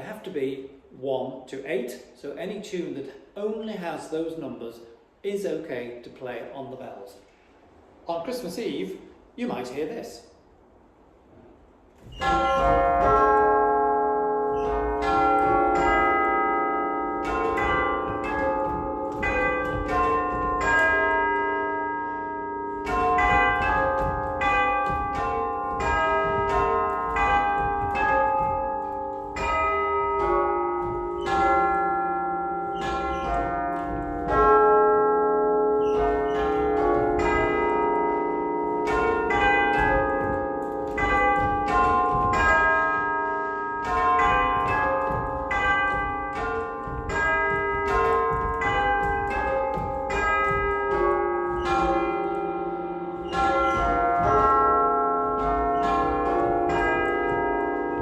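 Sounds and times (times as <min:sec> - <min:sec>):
church bells playing a tune: 0:12.0 - 0:58.0.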